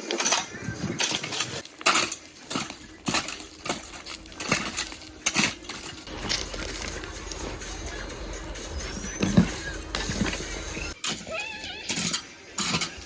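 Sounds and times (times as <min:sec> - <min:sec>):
hand tool scraping stony ground: 0:00.0 - 0:13.0
low steady hum: 0:01.6 - 0:11.0.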